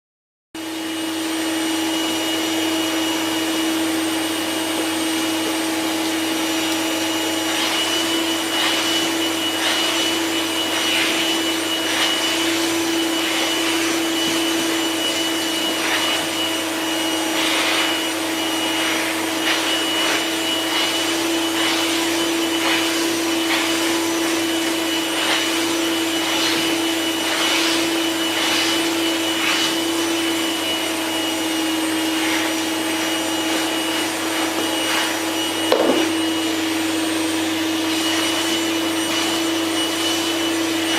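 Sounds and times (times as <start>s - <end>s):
vacuum cleaner running: 0.6s - 40.9s.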